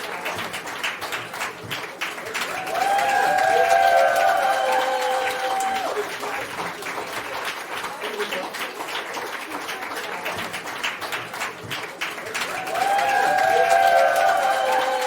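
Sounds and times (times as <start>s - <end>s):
crowd applauding: 0.0s - 15.0s
voices cheering: 2.1s - 8.6s, 12.3s - 15.0s.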